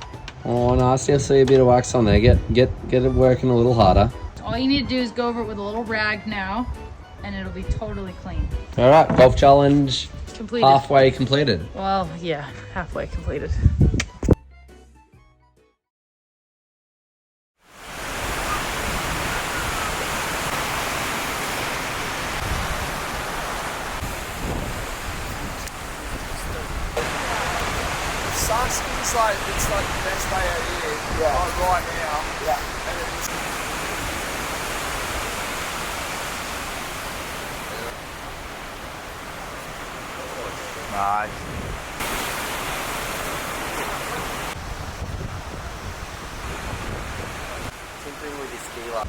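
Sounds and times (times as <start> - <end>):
ocean surf: 17.7 - 49.0.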